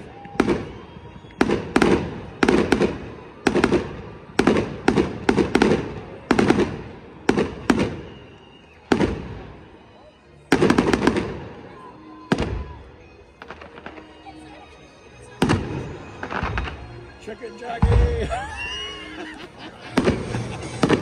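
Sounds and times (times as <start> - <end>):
fireworks bursting with rumble: 17.8 - 18.9, 19.9 - 21.0.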